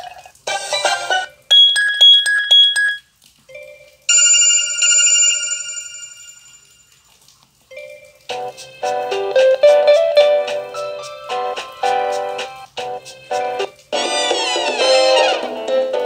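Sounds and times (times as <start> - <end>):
tuneful ringtone: 0.5 - 6.9
electronic trill ringtone: 1.1 - 3.0, 3.6 - 6.7
bell-like phone chime: 1.2 - 6.9.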